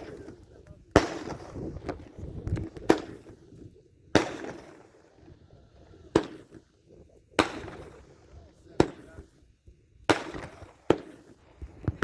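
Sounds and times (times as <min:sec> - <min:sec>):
fireworks bangs echoing: 0:00.0 - 0:03.5, 0:04.2 - 0:05.1, 0:06.1 - 0:06.7, 0:07.4 - 0:09.3, 0:10.0 - 0:12.0.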